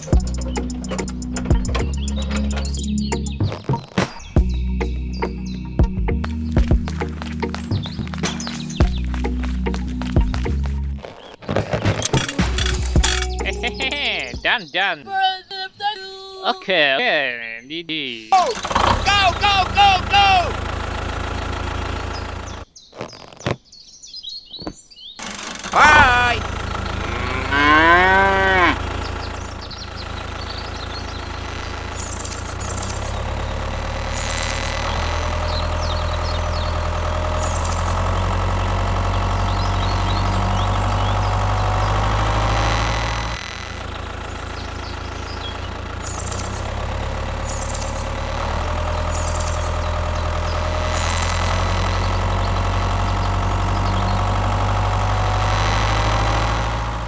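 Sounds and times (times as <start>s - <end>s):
small engine droning: 0.0s - 11.2s, 11.9s - 14.6s, 18.3s - 22.7s, 25.2s - 57.0s
cow mooing: 25.8s - 29.2s.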